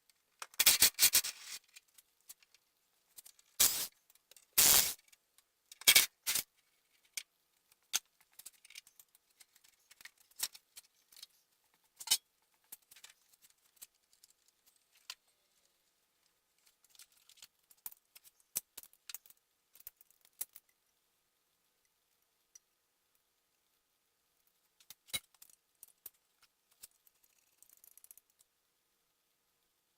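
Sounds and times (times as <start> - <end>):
tools clicking and clinking on metal: 11.9 - 13.1.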